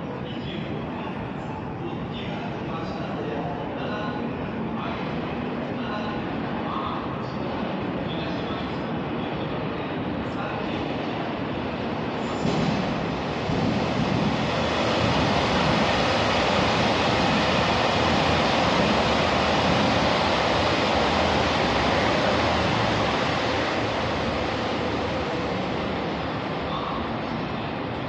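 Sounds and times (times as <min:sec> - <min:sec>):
electric train moving: 0:12.2 - 0:26.8.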